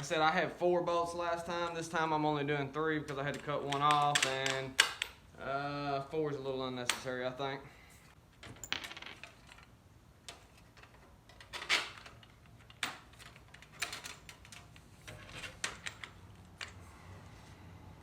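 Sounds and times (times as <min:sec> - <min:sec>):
metal bolts clicking and knocking: 0:03.0 - 0:05.2.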